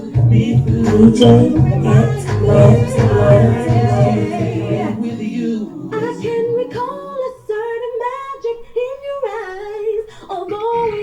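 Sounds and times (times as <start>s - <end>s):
bass and beat: 0.0s - 5.0s
melismatic sung vocal: 0.0s - 11.0s.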